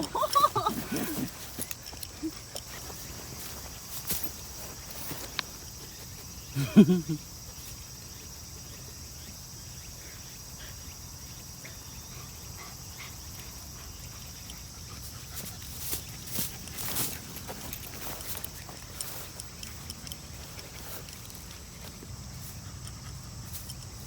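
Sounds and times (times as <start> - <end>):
faint footsteps or scuffs: 0.1 - 6.4, 15.0 - 24.0.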